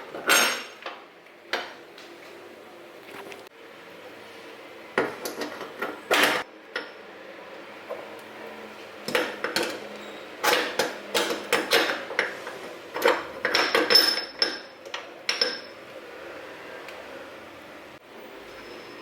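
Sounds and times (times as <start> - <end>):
dishes clattering: 0.0 - 0.9, 9.1 - 15.7.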